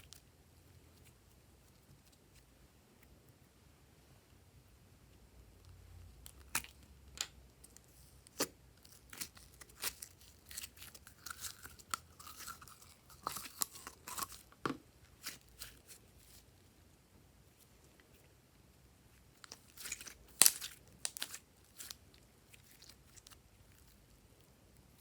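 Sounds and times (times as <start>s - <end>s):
slime crackling and popping: 8.3s - 14.5s, 19.4s - 23.8s.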